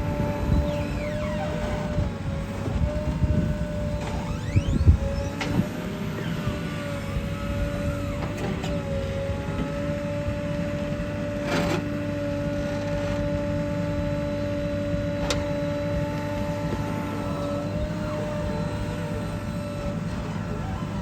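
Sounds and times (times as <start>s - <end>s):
diesel machinery engine rumble: 0.0s - 21.0s
high machine whine: 0.0s - 21.0s.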